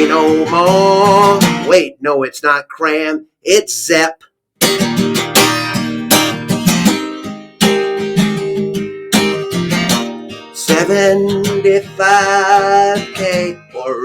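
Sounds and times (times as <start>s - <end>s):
guitar strumming chords: 0.0s - 1.8s, 4.6s - 14.0s.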